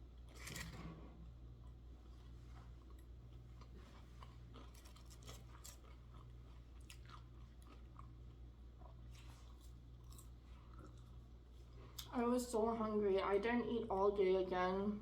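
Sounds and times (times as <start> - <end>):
chewing crispy food: 1.5 - 12.2.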